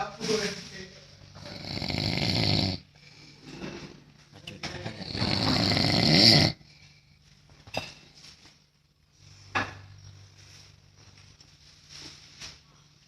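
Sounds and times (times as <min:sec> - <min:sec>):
man snoring: 0:01.4 - 0:02.9, 0:05.0 - 0:06.6.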